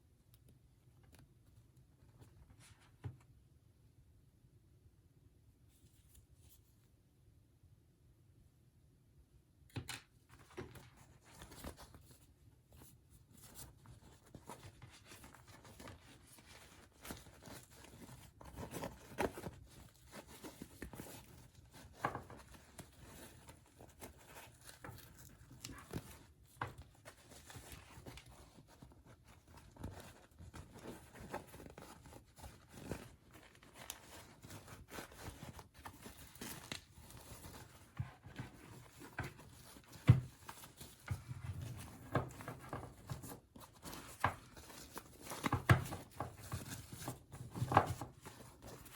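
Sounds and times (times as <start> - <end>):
packaging rustling and tearing: 14.3 - 48.9.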